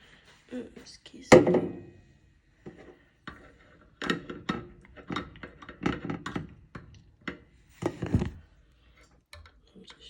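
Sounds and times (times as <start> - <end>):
kitchenware knocking and clinking: 1.3 - 1.9.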